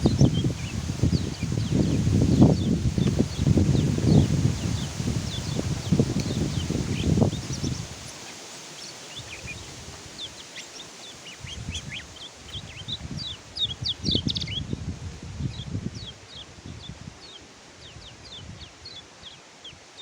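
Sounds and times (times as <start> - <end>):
bird singing high chirps: 0.0 - 14.7.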